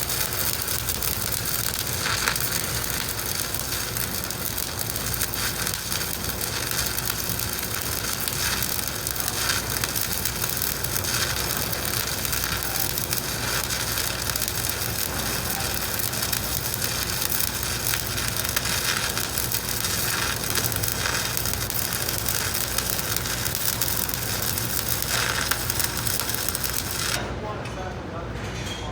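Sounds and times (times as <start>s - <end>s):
welding arc sizzling: 0.0s - 27.3s.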